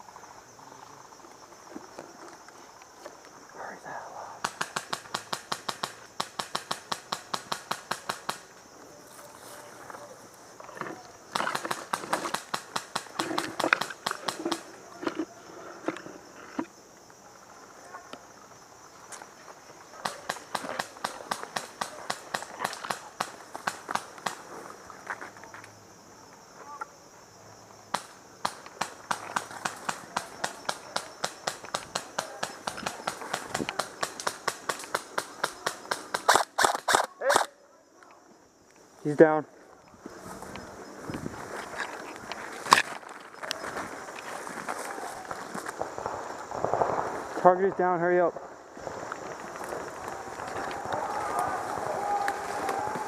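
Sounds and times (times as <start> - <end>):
faint high insect drone: 0.0 - 53.0
airsoft rifle shots: 4.4 - 8.5, 11.3 - 14.6, 20.0 - 24.4, 27.9 - 37.5
footsteps on forest floor: 39.5 - 47.4, 48.4 - 53.0.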